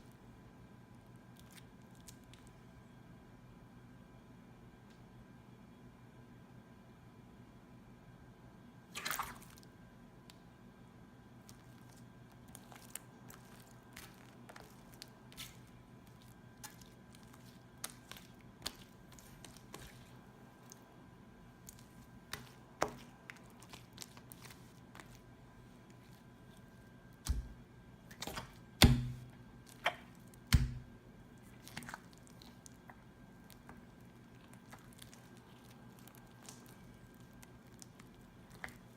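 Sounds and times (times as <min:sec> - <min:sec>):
slime squelching: 0:01.2 - 0:02.6, 0:08.9 - 0:09.7, 0:11.3 - 0:38.9.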